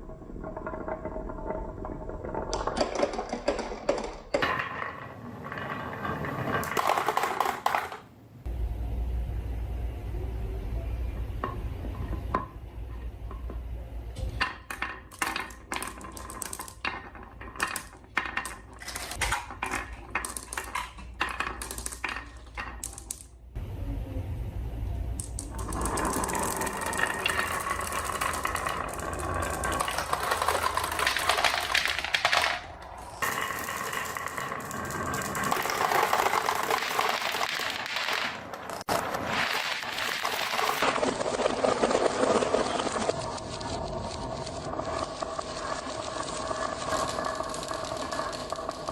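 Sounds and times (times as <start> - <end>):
marbles rattling on wooden run: 0.1 - 8.1, 14.4 - 23.4, 25.2 - 48.9.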